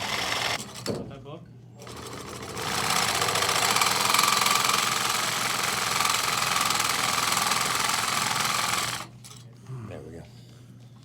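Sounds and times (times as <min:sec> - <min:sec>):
press tool motor running: 0:00.0 - 0:00.6, 0:01.8 - 0:09.2.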